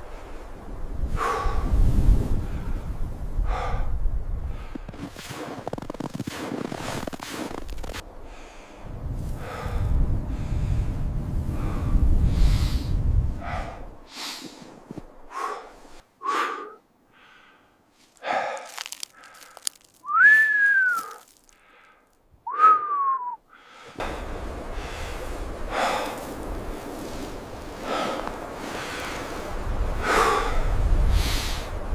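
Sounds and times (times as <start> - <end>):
heavy noisy breathing: 8.2 - 14.7, 15.3 - 19.8, 23.5 - 26.4, 27.8 - 31.7
whistled notes: 20.0 - 21.2, 22.5 - 23.4.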